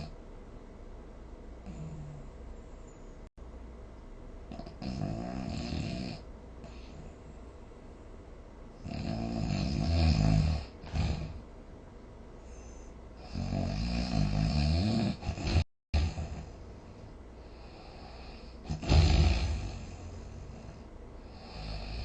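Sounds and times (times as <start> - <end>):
rough snoring: 1.6 - 2.3, 4.5 - 7.0, 8.8 - 11.4, 13.2 - 16.6, 17.5 - 22.0.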